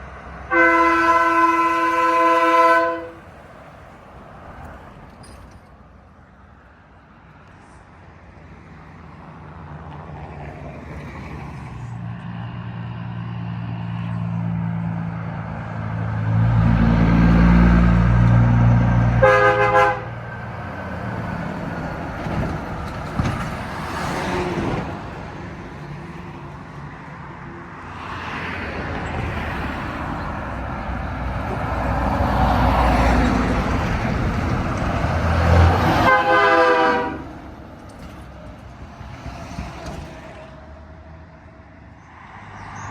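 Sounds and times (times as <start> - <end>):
truck engine rumble: 0.0 - 27.9, 28.6 - 42.0
truck air horn blast: 0.5 - 3.4, 16.6 - 20.4, 35.5 - 37.4.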